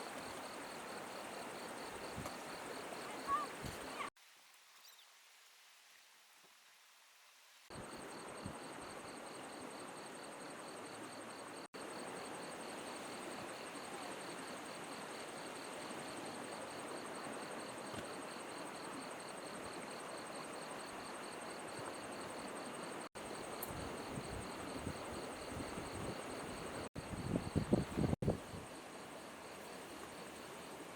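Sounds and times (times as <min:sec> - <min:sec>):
flowing river: 0:00.0 - 0:06.6
insects trilling: 0:00.1 - 0:04.1.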